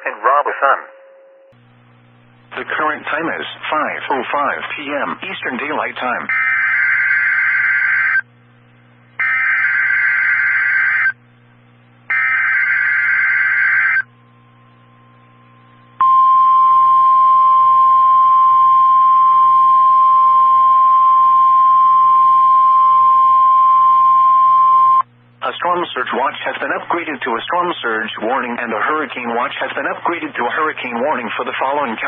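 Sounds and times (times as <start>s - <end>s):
steady alarm tone: 6.3s - 8.3s, 9.2s - 11.2s, 12.1s - 25.0s.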